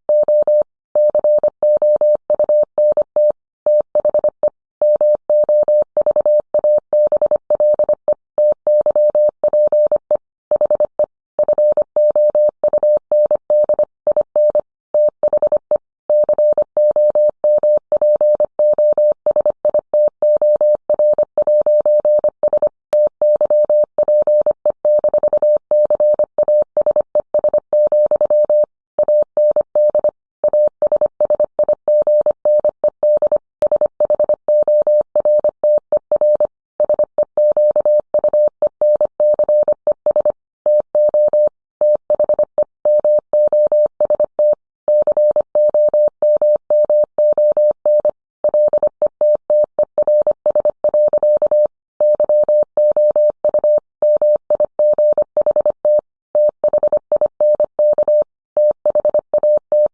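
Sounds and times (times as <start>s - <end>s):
morse code tone: 43.0s - 59.9s.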